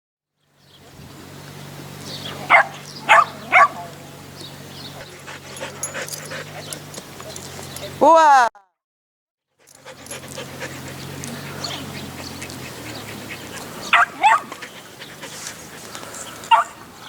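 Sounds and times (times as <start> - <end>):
dog yipping: 2.4 - 3.9, 9.7 - 15.5, 16.2 - 16.8.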